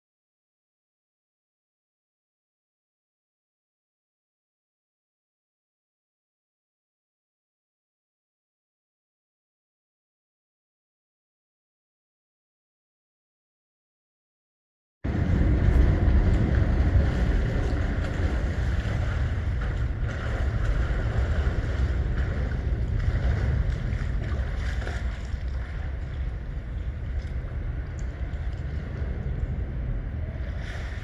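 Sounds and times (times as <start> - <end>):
wind buffeting microphone: 15.1 - 31.0.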